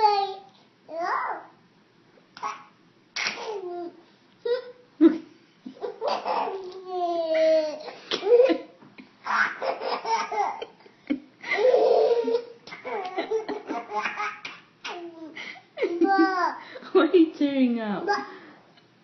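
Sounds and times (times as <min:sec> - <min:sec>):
baby laughing: 0:02.4 - 0:03.9, 0:04.5 - 0:10.8, 0:11.5 - 0:16.7.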